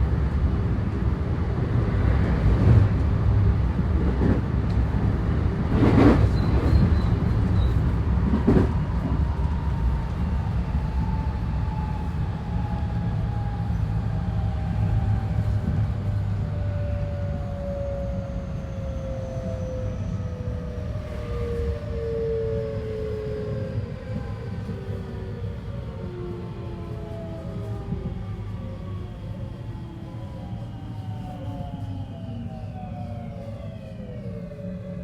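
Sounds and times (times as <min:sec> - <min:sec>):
train wheels rumbling on rail: 0:00.0 - 0:35.0.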